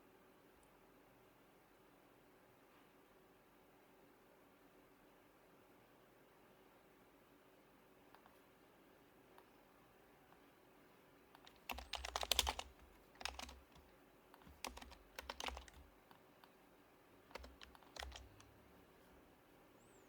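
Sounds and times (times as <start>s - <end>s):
soft muted keyboard typing: 11.4s - 16.6s, 17.2s - 18.9s.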